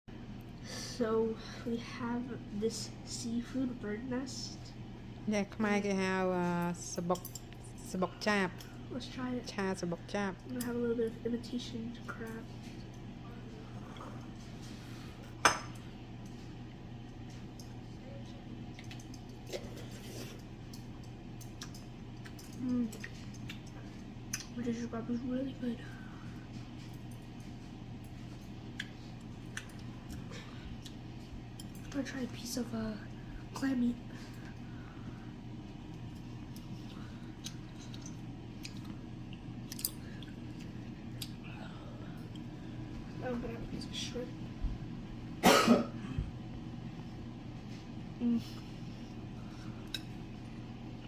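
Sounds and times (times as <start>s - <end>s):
steady low hum: 0.1s - 51.0s
soft chewing: 16.1s - 24.7s, 25.9s - 32.4s, 33.0s - 43.2s.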